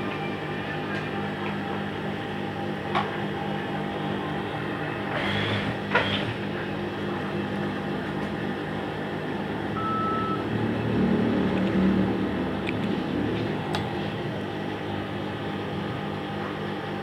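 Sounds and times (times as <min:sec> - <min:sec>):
sewing machine running: 0:05.1 - 0:06.3
short high beep: 0:09.8 - 0:10.4.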